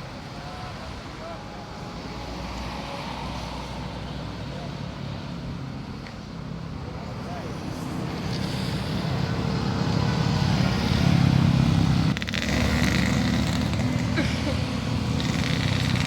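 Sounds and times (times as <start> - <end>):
bus engine rumble: 0.0 - 16.0.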